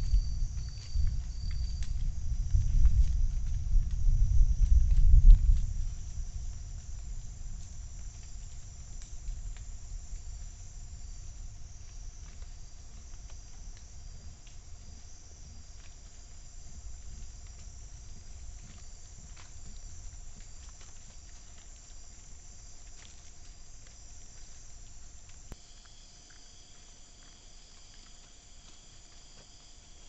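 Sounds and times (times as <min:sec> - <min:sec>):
low rumble: 0:00.0 - 0:13.0
faint ticks: 0:00.0 - 0:30.0
insects chirring: 0:00.0 - 0:30.0.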